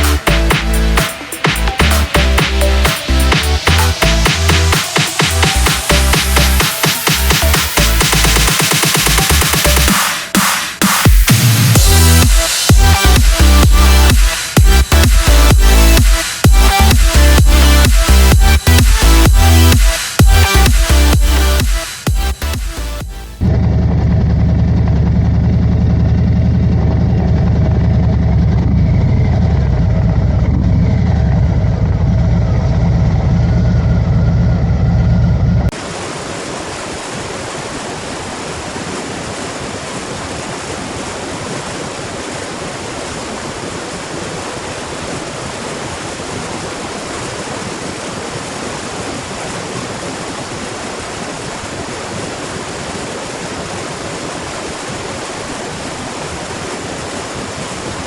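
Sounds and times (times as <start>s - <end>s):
waterfall rushing: 0.0s - 23.4s, 35.7s - 58.0s
bass-heavy electronic music: 0.0s - 35.7s.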